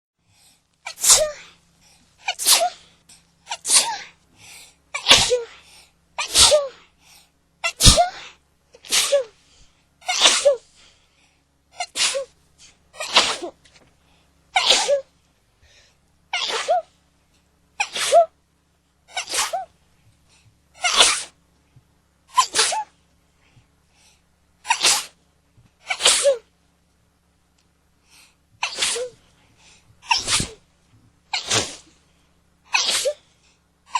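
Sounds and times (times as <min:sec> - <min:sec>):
person sneezing: 0:00.9 - 0:01.6, 0:02.2 - 0:04.2, 0:05.0 - 0:06.9, 0:07.6 - 0:09.4, 0:10.0 - 0:10.9, 0:11.8 - 0:13.6, 0:14.6 - 0:15.1, 0:16.4 - 0:16.9, 0:17.8 - 0:18.3, 0:19.1 - 0:19.7, 0:20.8 - 0:21.4, 0:22.3 - 0:22.9, 0:24.6 - 0:25.2, 0:25.8 - 0:26.5, 0:28.6 - 0:29.2, 0:30.0 - 0:30.6, 0:31.3 - 0:32.0, 0:32.7 - 0:33.3.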